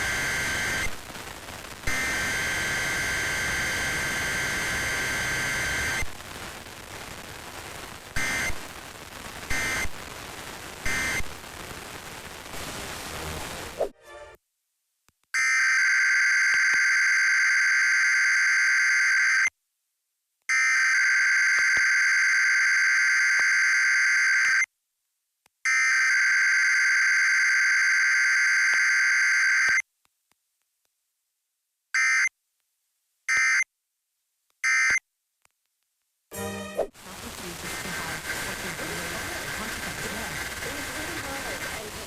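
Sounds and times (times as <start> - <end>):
digital data burst tones: 0.0 - 1.0, 1.8 - 6.1, 8.2 - 8.6, 9.5 - 9.9, 10.8 - 11.3.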